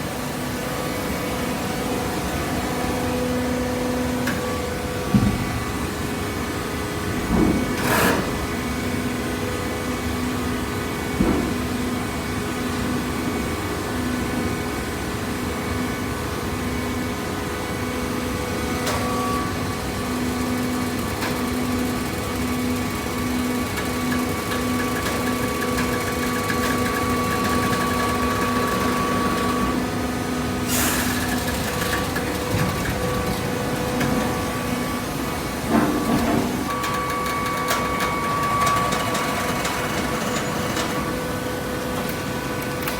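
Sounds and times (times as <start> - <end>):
hydraulic press motor hum: 18.4 - 42.9.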